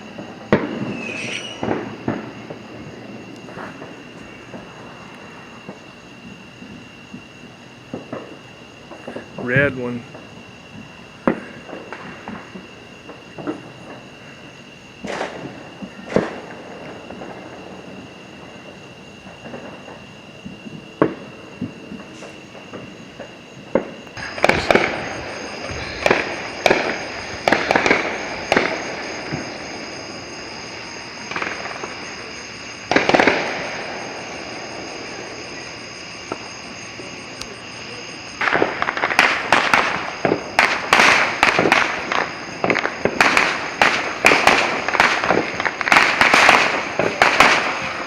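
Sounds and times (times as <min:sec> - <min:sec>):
fireworks bangs: 0:00.0 - 0:48.0
steady high-pitched tone: 0:00.8 - 0:05.6, 0:24.1 - 0:38.6.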